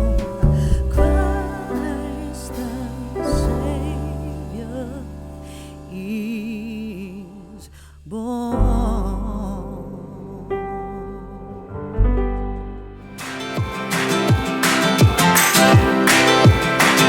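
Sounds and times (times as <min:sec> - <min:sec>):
person singing with vibrato: 0:00.0 - 0:11.8
sustained chords: 0:09.0 - 0:17.0.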